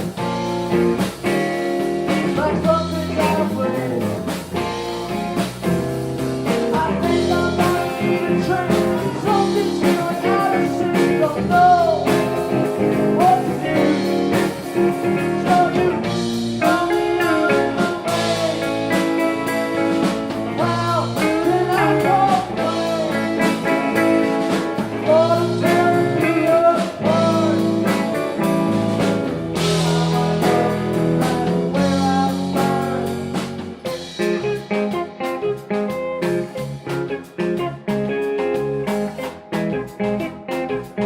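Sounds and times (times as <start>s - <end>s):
blues guitar music: 0.0s - 41.0s.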